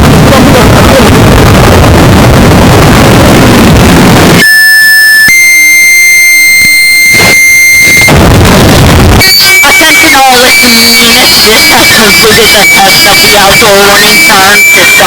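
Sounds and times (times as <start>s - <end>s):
distorted rushing noise: 0.0s - 15.0s
electronic alert tone: 4.3s - 8.2s, 9.2s - 15.0s.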